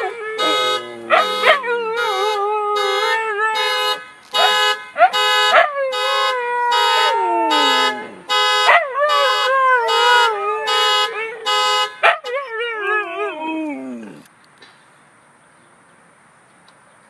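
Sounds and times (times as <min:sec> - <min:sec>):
dogs howling: 0:00.0 - 0:03.6, 0:05.6 - 0:11.5
car alarm horn blasts: 0:00.4 - 0:12.1.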